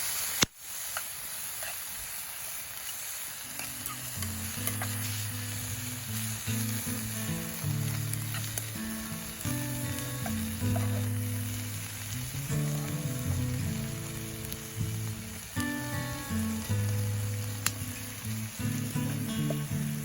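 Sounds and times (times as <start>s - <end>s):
fire pops: 0.0s - 20.0s
meat sizzling and crackling: 0.0s - 20.0s
music of low held notes: 4.0s - 20.0s.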